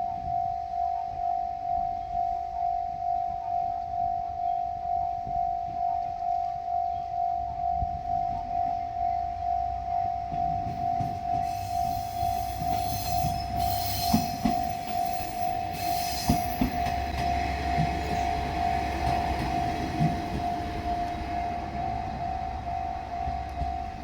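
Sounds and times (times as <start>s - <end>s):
level crossing warning bell: 0.0s - 24.0s
diesel engine rumble: 10.2s - 24.0s.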